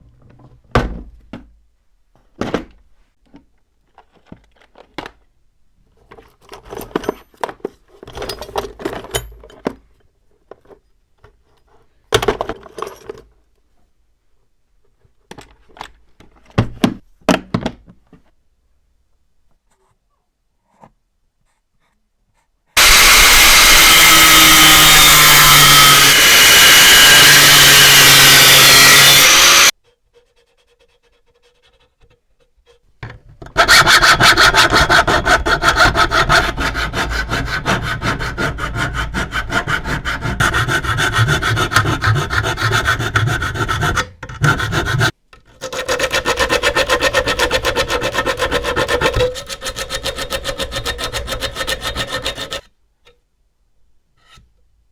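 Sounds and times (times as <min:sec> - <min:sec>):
loud machine noise: 0:22.8 - 0:29.7
hand tool scraping strokes: 0:22.8 - 0:32.8, 0:33.6 - 0:52.7.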